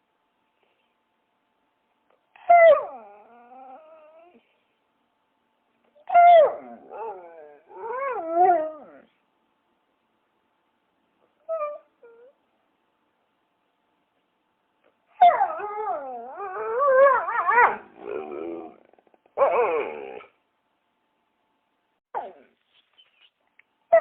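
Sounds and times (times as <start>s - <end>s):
dog whining and howling: 2.3s - 4.5s, 5.9s - 9.2s, 11.4s - 12.4s, 15.1s - 18.8s, 19.4s - 20.4s.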